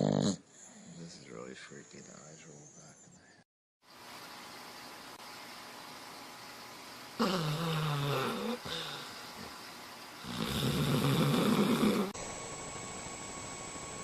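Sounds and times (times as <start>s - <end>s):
dog snoring: 0.0s - 1.1s, 7.2s - 9.5s, 10.2s - 12.2s.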